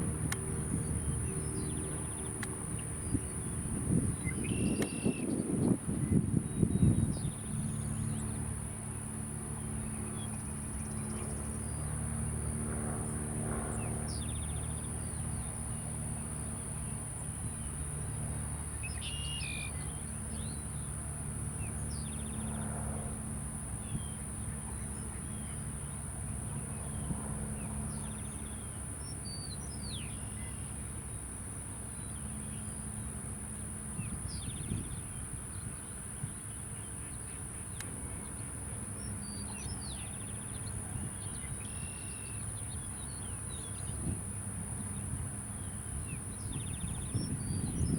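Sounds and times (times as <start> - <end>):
high insect drone: 0.0 - 47.9
low steady hum: 0.0 - 47.9
bird chirps: 4.2 - 5.4.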